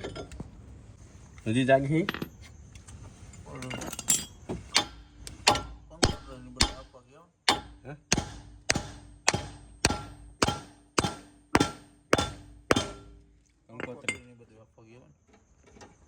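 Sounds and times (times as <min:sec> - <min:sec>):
hammer striking metal: 0:04.7 - 0:13.3.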